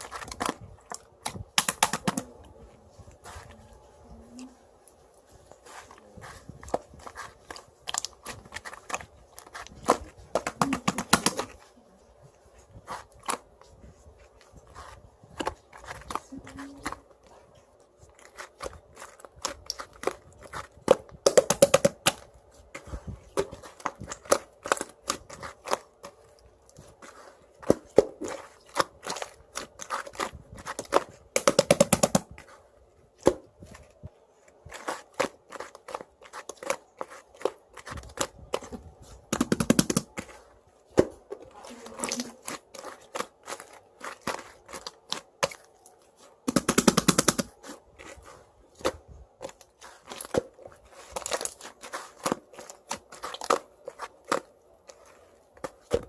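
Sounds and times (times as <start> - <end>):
clay slime squished by hand: 0.0 - 56.0
air pops crackling: 46.4 - 47.5.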